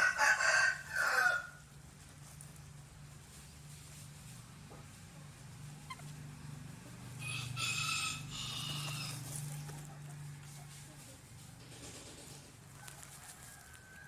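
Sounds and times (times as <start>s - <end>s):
rooster crowing: 0.0s - 1.6s, 7.2s - 9.2s, 12.8s - 14.0s.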